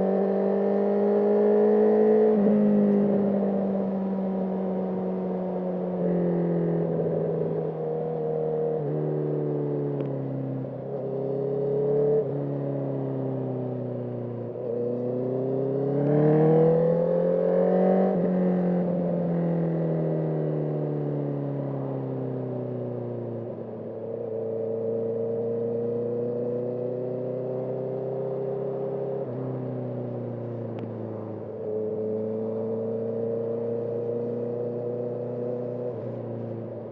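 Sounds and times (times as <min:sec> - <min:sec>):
motorcycle engine accelerating: 0:00.0 - 0:36.9.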